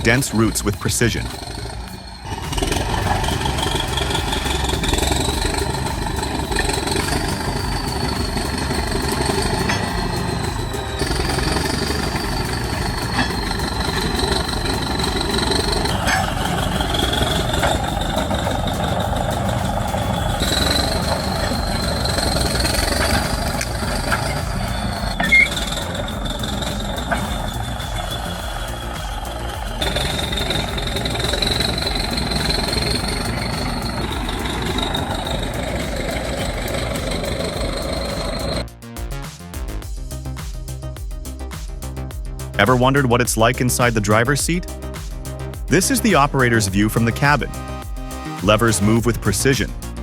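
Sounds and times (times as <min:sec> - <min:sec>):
bulldozer diesel engine: 0:00.0 - 0:38.6
high whine: 0:00.0 - 0:50.0.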